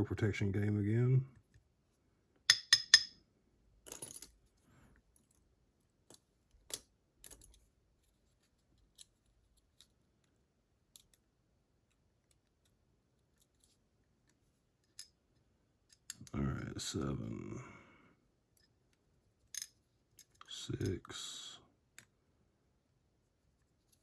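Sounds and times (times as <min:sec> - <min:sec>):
faint metallic clicks and clinks: 0:12.3 - 0:15.2.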